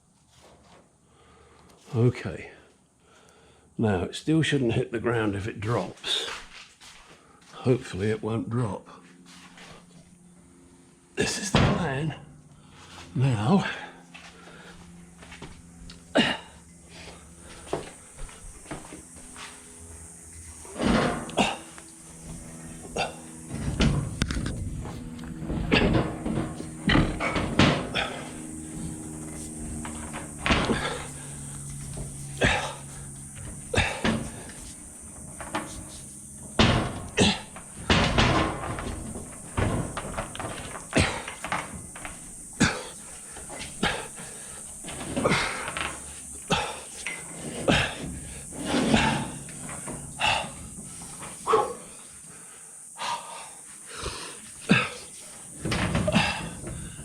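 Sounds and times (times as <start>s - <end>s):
low steady hum: 0.9s - 57.0s
man breathing hard: 1.0s - 1.8s, 3.0s - 3.8s, 13.6s - 15.1s, 30.6s - 34.9s, 42.5s - 49.5s, 50.1s - 57.0s
man grunting: 16.1s - 16.6s, 21.4s - 21.8s, 22.9s - 23.3s, 32.4s - 32.8s, 33.7s - 34.1s, 37.2s - 37.5s, 47.7s - 48.0s, 53.0s - 55.1s
heavy knocks and clunks: 22.3s - 51.8s.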